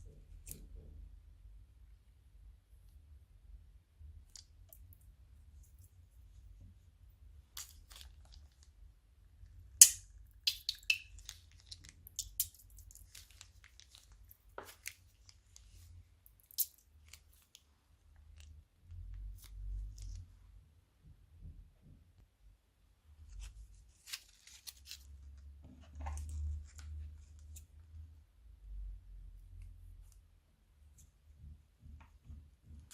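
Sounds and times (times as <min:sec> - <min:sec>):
crisp snaps and crackles of slime: 0:07.5 - 0:08.7, 0:09.8 - 0:20.2, 0:23.4 - 0:25.1.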